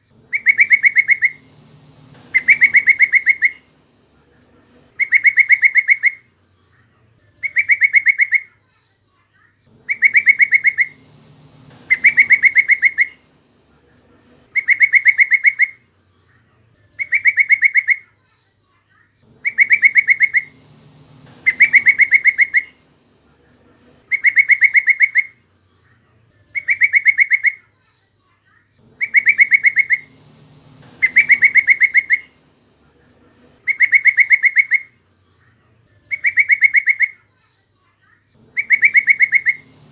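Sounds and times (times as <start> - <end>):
bird chattering call: 0.2 - 3.9, 4.7 - 6.3, 7.4 - 8.5, 9.7 - 13.5, 14.2 - 15.8, 17.0 - 18.1, 19.3 - 25.4, 26.6 - 27.6, 28.8 - 35.1, 36.1 - 37.2, 38.4 - 39.9.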